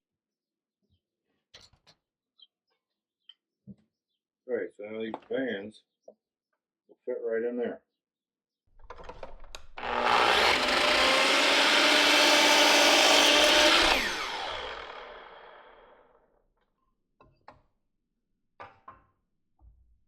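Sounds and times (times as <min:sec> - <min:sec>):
electric power tool winding down: 0:09.5 - 0:16.0.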